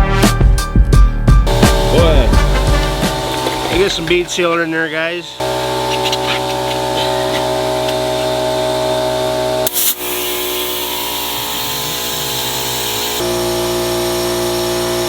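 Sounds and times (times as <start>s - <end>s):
air compressor motor running: 1.5s - 15.0s
air hissing: 9.6s - 13.2s.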